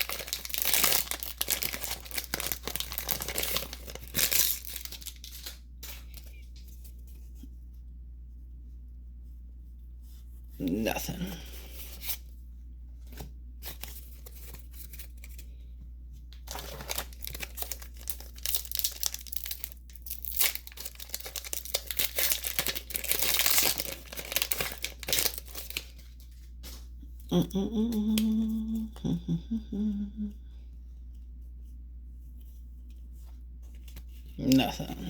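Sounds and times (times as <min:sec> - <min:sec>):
foil wrapper crinkling and tearing: 0:00.0 - 0:06.4, 0:16.3 - 0:26.6.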